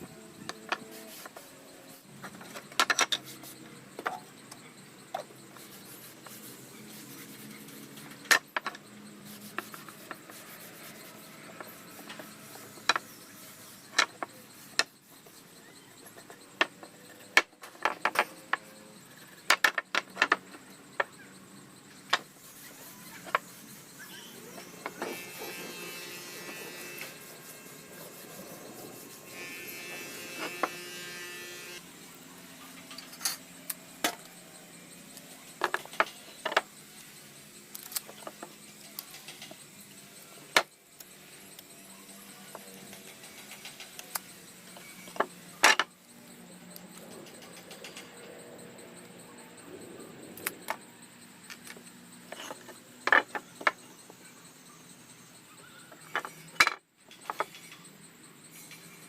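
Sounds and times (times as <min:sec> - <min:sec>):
faint steady hum: 0:00.0 - 0:59.0
knocks and clicks of wood and tools: 0:00.4 - 0:01.5, 0:02.2 - 0:03.3, 0:04.0 - 0:05.3, 0:07.9 - 0:08.9, 0:11.6 - 0:13.1, 0:13.9 - 0:15.4, 0:16.0 - 0:18.7, 0:19.4 - 0:21.1, 0:35.6 - 0:36.7, 0:40.5 - 0:40.7, 0:42.5 - 0:45.9, 0:51.5 - 0:53.9, 0:56.0 - 0:57.8.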